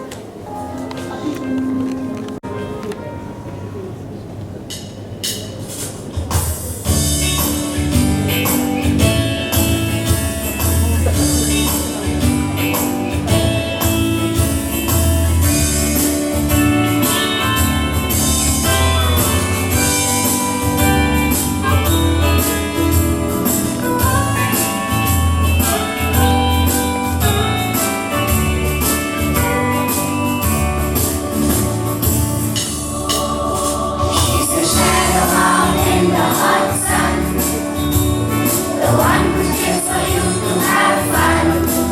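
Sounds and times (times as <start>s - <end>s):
song with singing: 32.4s - 41.9s.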